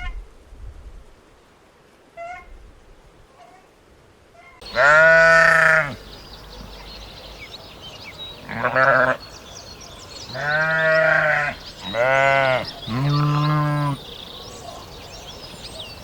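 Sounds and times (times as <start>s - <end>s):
goat bleating: 4.4s - 6.0s, 8.5s - 9.2s, 10.3s - 14.0s
faint birds chirping: 4.4s - 16.0s.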